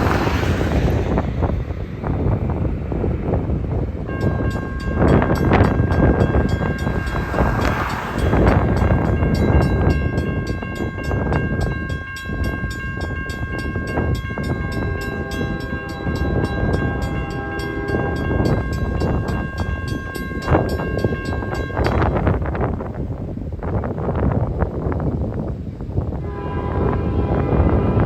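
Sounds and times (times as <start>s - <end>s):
train rumble: 0.0s - 28.0s
wind: 0.0s - 28.0s
train horn blast: 14.0s - 19.4s, 26.2s - 28.0s.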